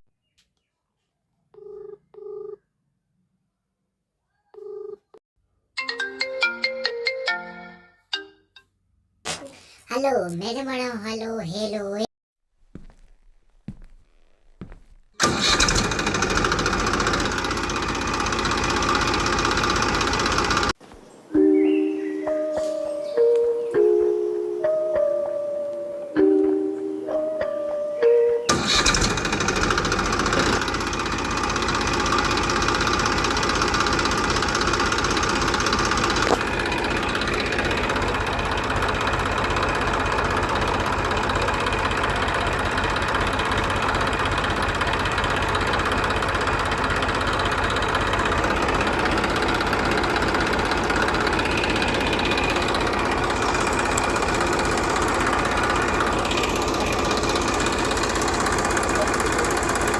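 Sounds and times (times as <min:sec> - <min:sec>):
tractor engine knocking: 0:15.1 - 0:20.8, 0:28.5 - 0:59.9.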